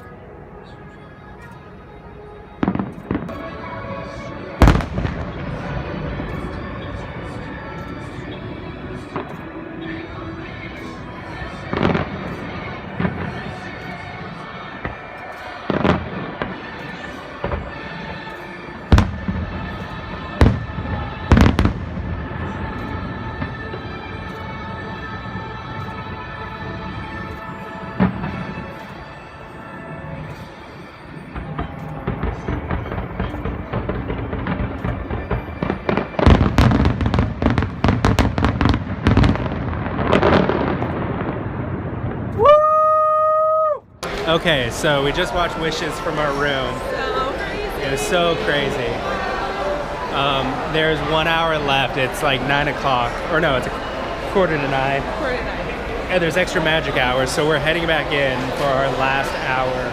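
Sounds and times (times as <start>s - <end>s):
background music: 0.0s - 59.9s
fireworks booming: 2.6s - 10.6s, 11.4s - 16.8s, 18.9s - 24.6s, 31.2s - 42.6s, 43.7s - 59.9s.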